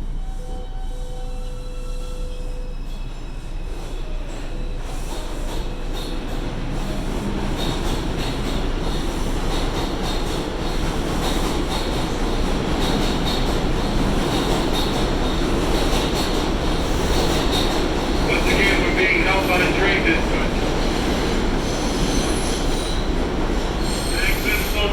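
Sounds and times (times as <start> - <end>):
subway wheels rumbling on track: 0.0 - 24.9.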